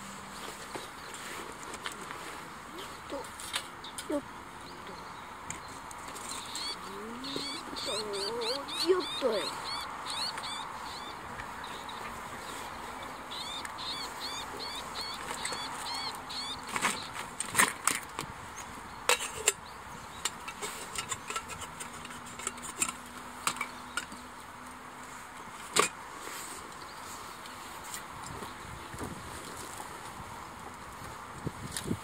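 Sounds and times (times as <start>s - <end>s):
steady outdoor hiss: 0.0s - 32.0s
small bird chirping: 2.8s - 17.2s.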